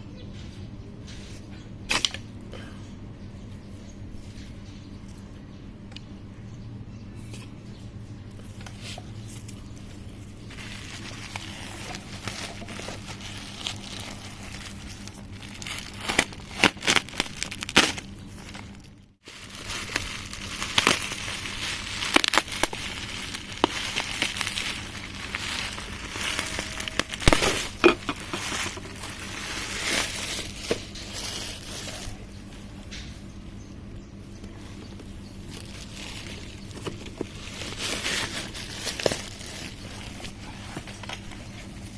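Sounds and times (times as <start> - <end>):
plastic packaging crinkling: 9.2 - 32.3, 35.0 - 41.9.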